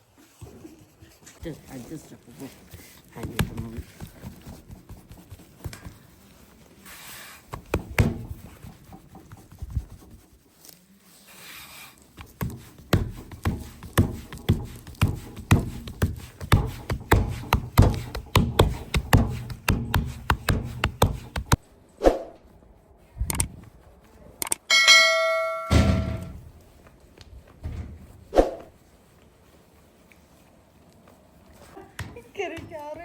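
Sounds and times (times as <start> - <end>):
steady soft thumps: 7.5 - 10.2, 12.2 - 21.6
scattered taps: 12.4 - 21.6
brief swishes: 22.0 - 22.4, 28.3 - 28.7.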